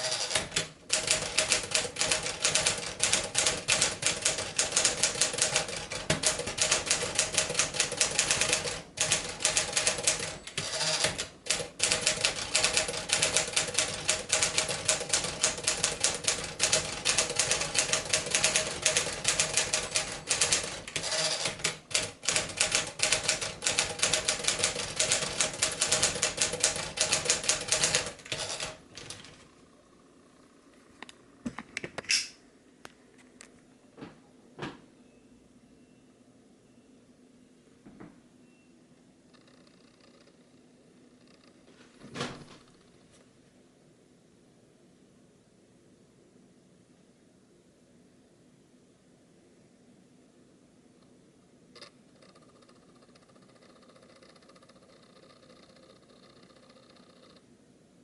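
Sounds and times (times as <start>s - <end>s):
typewriter typing: 0.0s - 29.5s.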